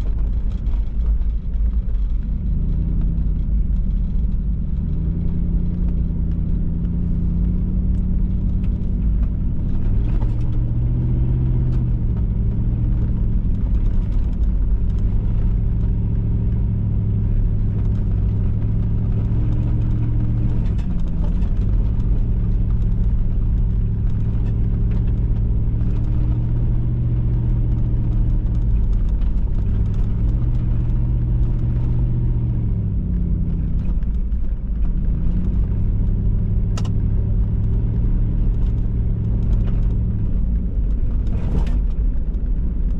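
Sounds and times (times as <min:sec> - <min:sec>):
small clicks and rattles: 0:00.0 - 0:42.9
vehicle engine rumbling: 0:00.0 - 0:42.9.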